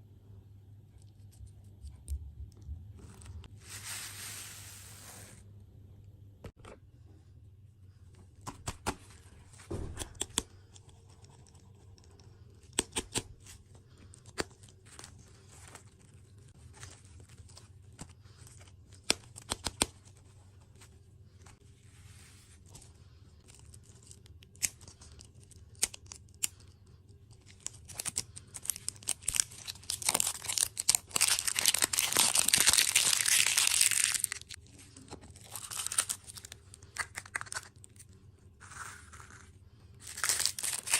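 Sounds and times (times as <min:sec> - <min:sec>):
food packaging crinkling: 0:27.4 - 0:34.6, 0:35.3 - 0:38.0, 0:38.6 - 0:40.9.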